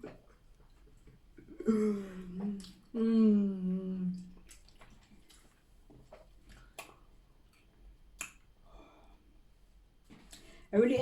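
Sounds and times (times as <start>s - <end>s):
chewing and lip smacks: 2.4s - 2.9s, 4.1s - 8.6s.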